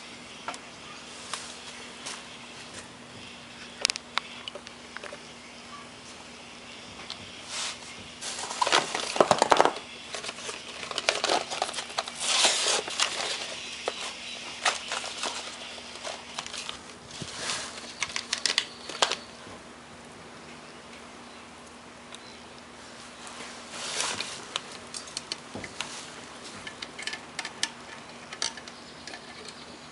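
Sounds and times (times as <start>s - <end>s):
faint steady hum: 0.0s - 29.9s
small objects clicking and rattling: 8.3s - 16.8s, 17.9s - 19.3s.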